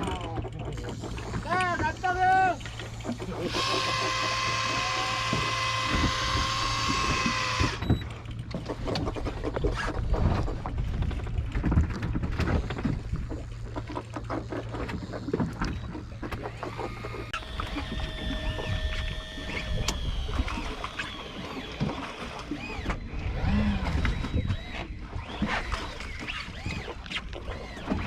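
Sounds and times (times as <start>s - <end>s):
boat engine humming: 0.0s - 28.0s
electric fishing reel whining: 0.8s - 8.2s, 15.6s - 28.0s.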